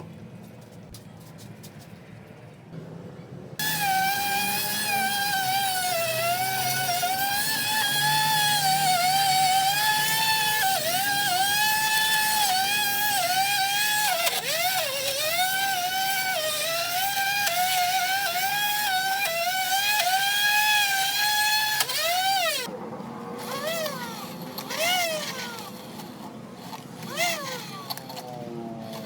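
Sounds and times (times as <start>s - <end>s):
vacuum motor whining: 3.6s - 29.0s.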